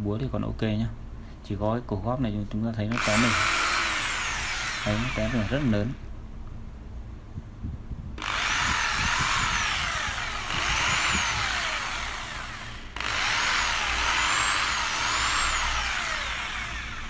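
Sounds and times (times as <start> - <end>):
hammer drill motor running: 2.9 - 6.0, 8.2 - 17.0.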